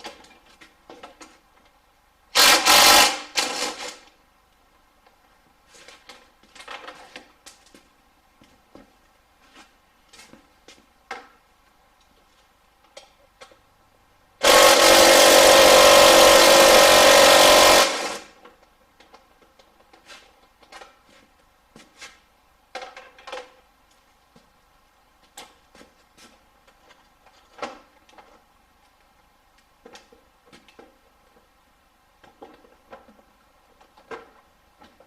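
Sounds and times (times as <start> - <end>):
power tool running: 2.4 - 4.0, 14.4 - 18.3.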